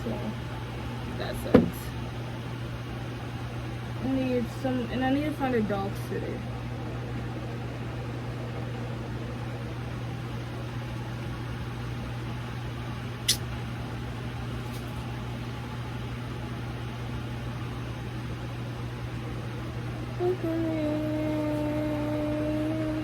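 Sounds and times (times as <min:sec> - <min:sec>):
low mechanical hum: 0:00.0 - 0:23.0
sharp click: 0:13.3 - 0:13.5.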